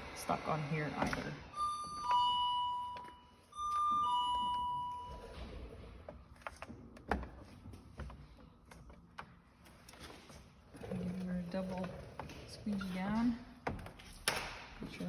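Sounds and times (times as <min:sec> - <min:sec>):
two-tone electronic chime: 0:01.5 - 0:05.7.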